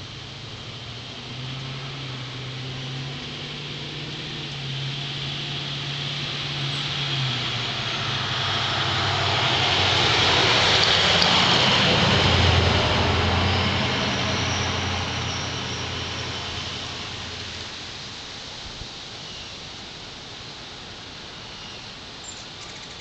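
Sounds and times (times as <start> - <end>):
vehicle passing by: 0.0 - 18.1.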